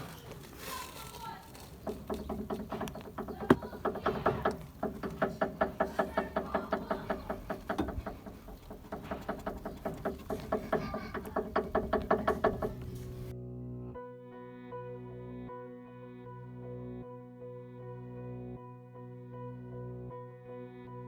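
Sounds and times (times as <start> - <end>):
car suspension links knocking: 0.0 - 13.3.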